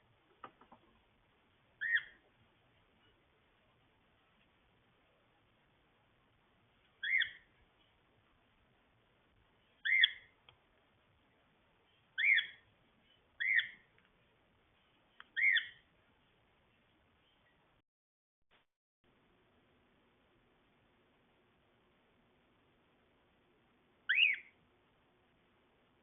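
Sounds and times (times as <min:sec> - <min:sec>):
cockatiel chirping: 0:01.8 - 0:02.3, 0:06.9 - 0:07.6, 0:09.7 - 0:10.4, 0:11.9 - 0:13.9, 0:15.1 - 0:15.9, 0:24.1 - 0:24.6.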